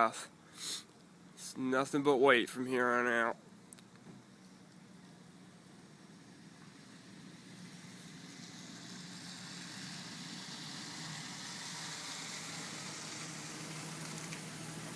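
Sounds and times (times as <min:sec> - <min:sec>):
hiss: 0:00.5 - 0:00.9, 0:05.9 - 0:14.9.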